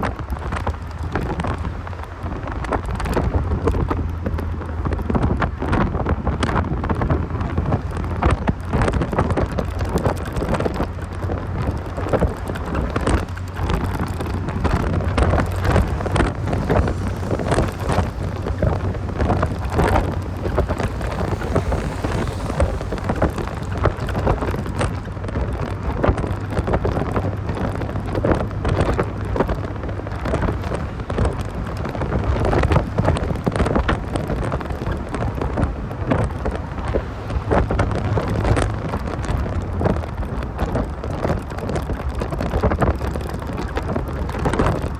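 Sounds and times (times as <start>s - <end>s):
car engine droning while driving: 0.0s - 44.9s
wind buffeting microphone: 0.0s - 44.9s.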